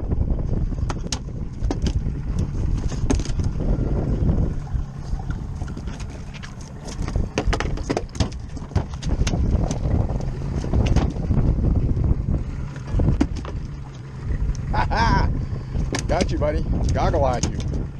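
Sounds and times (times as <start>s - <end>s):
boat engine rumbling: 0.0s - 17.9s
wind: 0.0s - 17.9s
sharp knocks and clicks: 0.8s - 3.5s, 5.6s - 11.2s, 12.7s - 14.0s, 15.8s - 17.9s.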